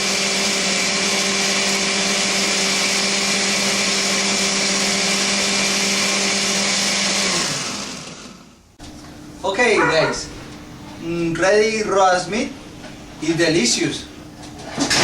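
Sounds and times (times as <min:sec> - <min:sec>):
blender running: 0:00.0 - 0:08.6.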